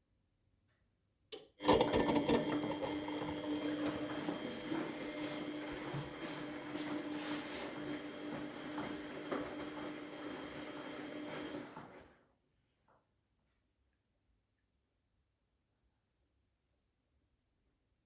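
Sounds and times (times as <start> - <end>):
washing machine running: 1.6 - 12.2.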